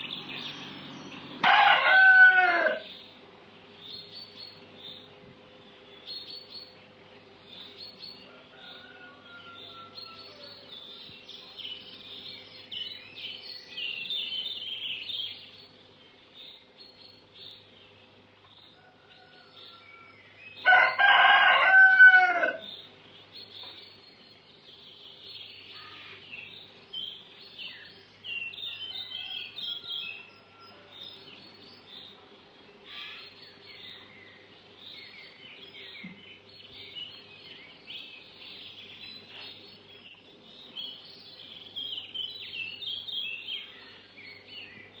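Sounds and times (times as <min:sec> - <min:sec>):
small birds chirping: 0:00.0 - 0:45.0
rooster crowing: 0:01.4 - 0:02.9, 0:08.3 - 0:10.8, 0:18.8 - 0:22.7, 0:28.7 - 0:31.0.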